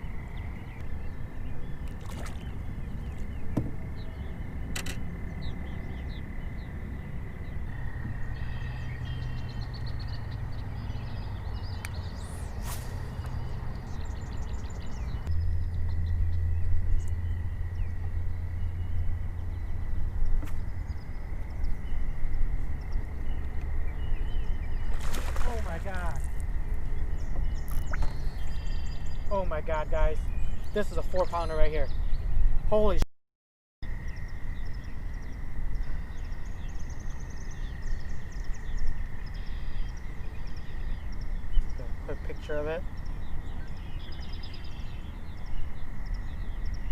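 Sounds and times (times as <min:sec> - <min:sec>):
low steady rumble: 0:00.0 - 0:31.0
bird chirping: 0:00.0 - 0:33.0, 0:34.0 - 0:46.9
high-pitched whine: 0:11.9 - 0:23.2.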